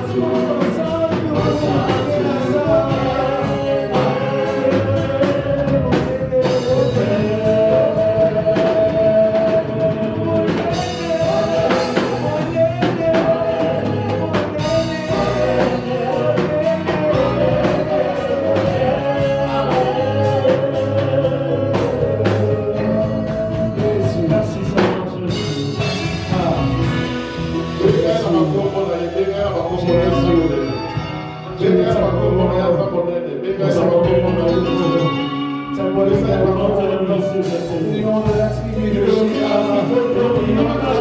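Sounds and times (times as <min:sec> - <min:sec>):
drum strikes: 0:00.0 - 0:29.0
people singing: 0:00.0 - 0:30.9, 0:31.5 - 0:41.0
gospel band playing: 0:00.0 - 0:41.0.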